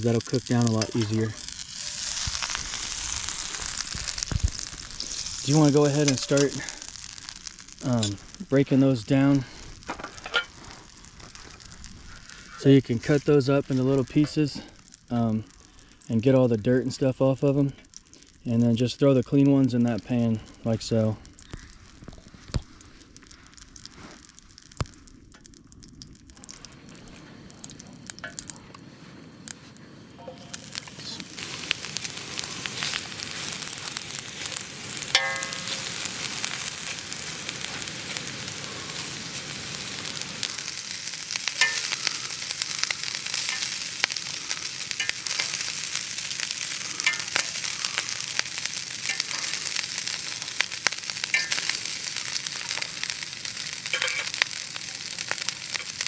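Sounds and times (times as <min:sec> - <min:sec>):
stirring clicks and scrapes: 0:00.0 - 0:08.6, 0:30.4 - 0:56.0
mushrooms sizzling in a pan: 0:00.0 - 0:56.0.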